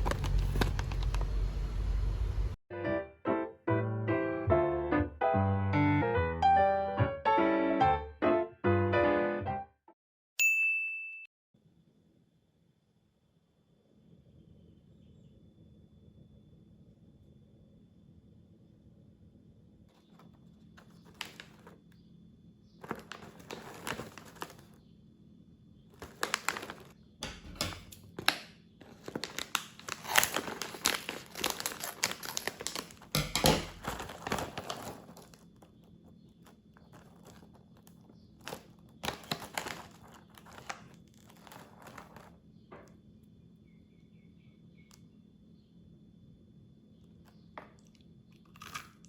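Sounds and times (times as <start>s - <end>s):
packet tearing open: 0.0s - 1.3s, 20.0s - 21.8s, 22.8s - 24.8s, 26.0s - 35.8s, 36.4s - 42.3s
plastic snack packet crinkling: 0.0s - 1.6s, 19.9s - 21.8s, 22.8s - 24.8s, 25.9s - 42.4s, 48.5s - 49.0s.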